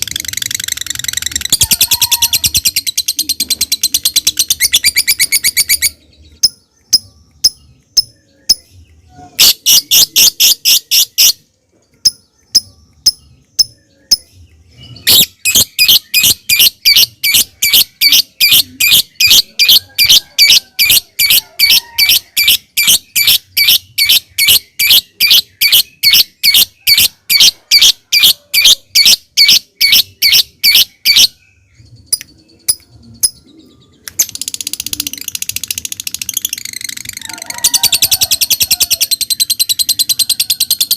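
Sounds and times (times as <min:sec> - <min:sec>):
bird chattering trill: 0:00.0 - 0:08.7, 0:09.4 - 0:14.3, 0:15.0 - 0:31.4, 0:32.1 - 0:40.9
lovebird high-pitched chips: 0:00.0 - 0:14.3.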